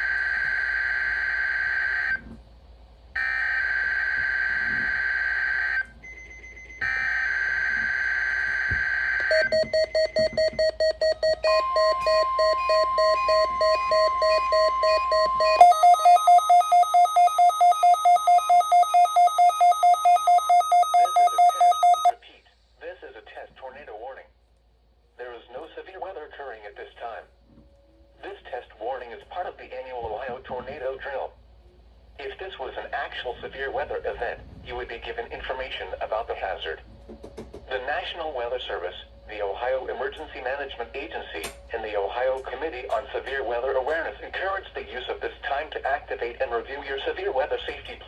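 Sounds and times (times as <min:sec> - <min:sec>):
rapid alarm beeping: 0:03.2 - 0:22.1
steady warning tone: 0:03.2 - 0:22.2, 0:35.5 - 0:45.4.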